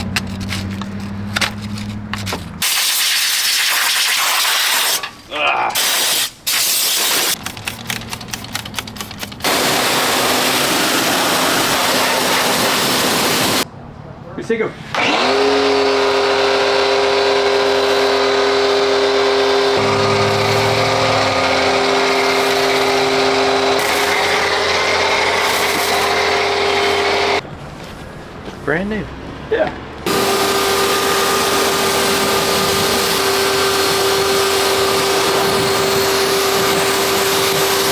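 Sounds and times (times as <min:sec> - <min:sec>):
high-pressure sprayer hissing: 0:02.6 - 0:05.0, 0:05.8 - 0:13.6, 0:15.9 - 0:27.4, 0:30.1 - 0:37.9
rapid clicking: 0:07.3 - 0:09.5
low motor hum: 0:15.1 - 0:27.4
vehicle engine running: 0:17.7 - 0:27.4.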